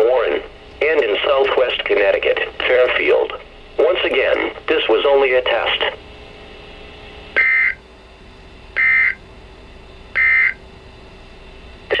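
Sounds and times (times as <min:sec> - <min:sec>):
faint radio hiss: 0:00.0 - 0:07.6
steady hum: 0:00.0 - 0:12.0
warbling data tone bursts: 0:07.4 - 0:07.8, 0:08.8 - 0:09.2, 0:10.2 - 0:10.6.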